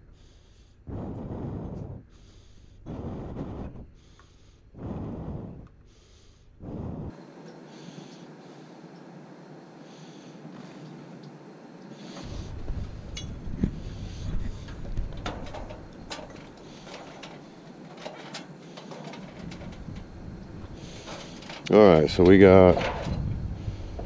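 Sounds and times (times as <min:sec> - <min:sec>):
soft breathing: 0:00.0 - 0:21.7, 0:23.4 - 0:24.0
low rumble: 0:00.8 - 0:07.2, 0:12.3 - 0:16.6, 0:19.4 - 0:21.2, 0:22.0 - 0:24.0
sharp clicks and knocks on fittings: 0:12.2 - 0:20.1.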